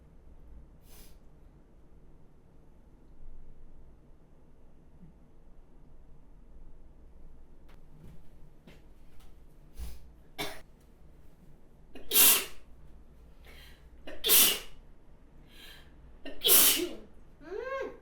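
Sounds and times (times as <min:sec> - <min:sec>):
person sneezing: 0:12.0 - 0:12.6, 0:13.5 - 0:14.7, 0:16.3 - 0:17.1
faint breaths: 0:13.4 - 0:14.0, 0:15.4 - 0:16.1.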